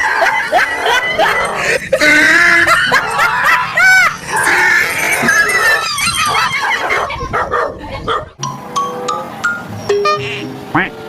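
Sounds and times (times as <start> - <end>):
animal squeals and yelps: 0.0 - 8.2.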